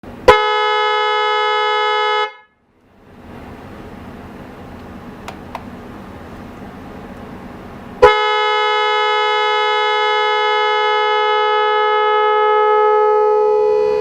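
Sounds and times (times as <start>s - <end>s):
car horn steady tone: 0.2s - 2.6s, 8.0s - 14.0s.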